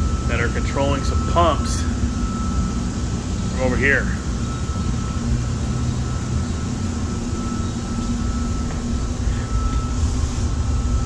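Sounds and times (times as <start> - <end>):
faint high whine: 0.0 - 11.0
mechanical equipment rumbling hum: 0.0 - 11.0.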